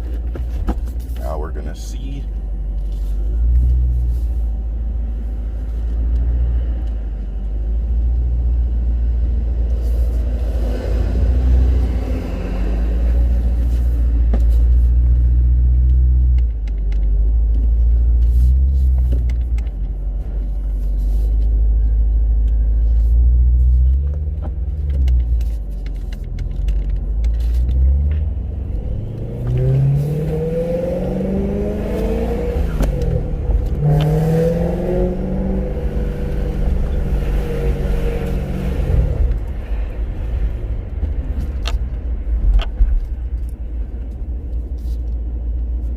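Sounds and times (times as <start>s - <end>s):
car engine revving: 27.3s - 42.3s.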